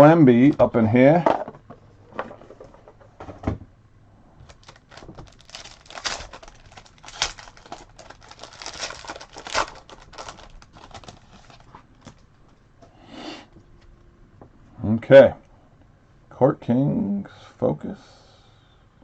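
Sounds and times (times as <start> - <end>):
wrapper crinkling and tearing: 4.4 - 12.4.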